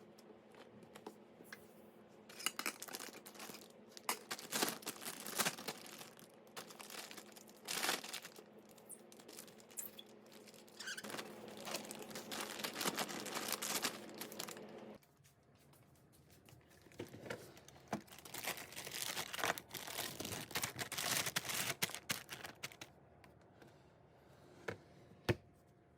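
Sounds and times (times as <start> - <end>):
plastic packaging crinkling: 2.3 - 15.0, 16.4 - 22.9.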